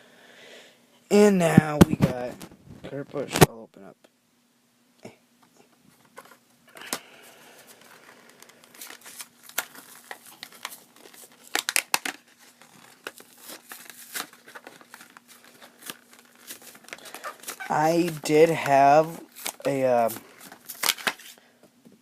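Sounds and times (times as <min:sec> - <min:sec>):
packaging crinkling and tearing: 0:06.2 - 0:21.5.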